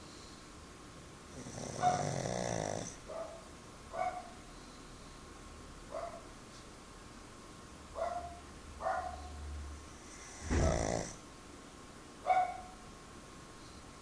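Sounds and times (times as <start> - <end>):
dog snoring: 1.3 - 3.0, 10.0 - 11.2.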